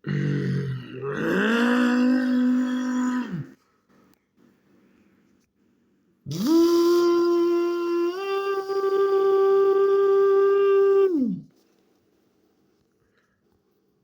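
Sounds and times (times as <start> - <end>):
person humming engine-like drone: 6.3 - 11.5.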